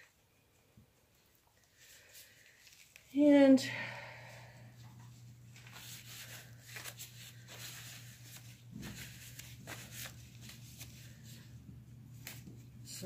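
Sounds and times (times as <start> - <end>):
soft brush strokes: 4.7 - 13.0
paint supplies scraping and rustling: 5.2 - 11.5.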